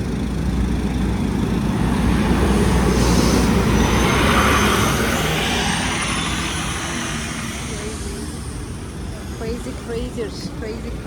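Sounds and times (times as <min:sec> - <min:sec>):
vehicle rumbling in traffic: 0:00.0 - 0:11.0
hiss: 0:02.8 - 0:04.5.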